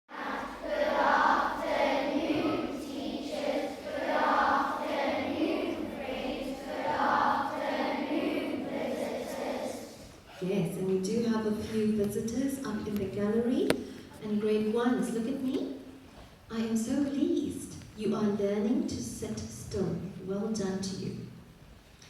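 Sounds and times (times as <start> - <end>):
children singing in unison: 0.1 - 10.2.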